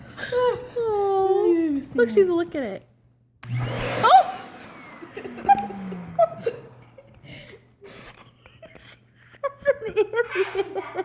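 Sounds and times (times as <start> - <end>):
vacuum cleaner winding down: 3.4 - 7.6
people laughing: 5.0 - 11.0.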